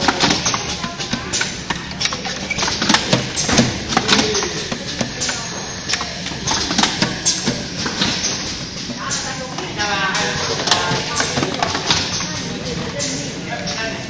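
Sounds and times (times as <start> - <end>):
cartoning machine clattering: 0.0 - 14.0.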